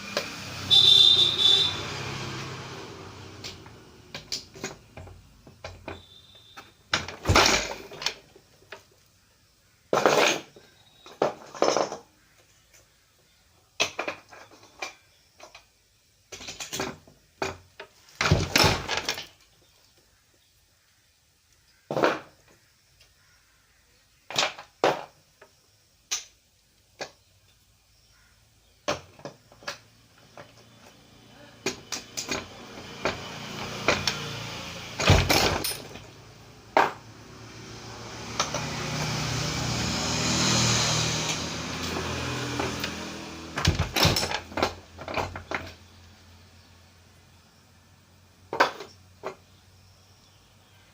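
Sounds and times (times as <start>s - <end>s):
vehicle engine passing: 0.0s - 5.0s, 29.9s - 48.4s.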